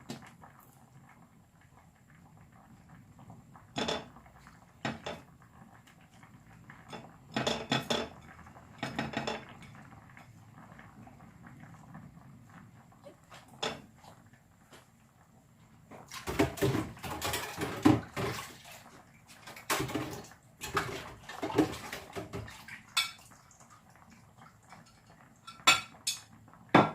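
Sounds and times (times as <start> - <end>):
pots and pans clattering: 3.8 - 5.4, 6.8 - 9.9, 13.2 - 13.9, 16.0 - 23.4, 24.8 - 26.9.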